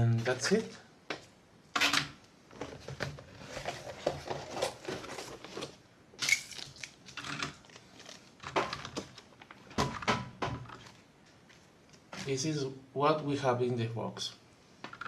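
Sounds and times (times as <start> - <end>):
items clattering: 1.8 - 12.4
packaging rustling: 2.6 - 9.8.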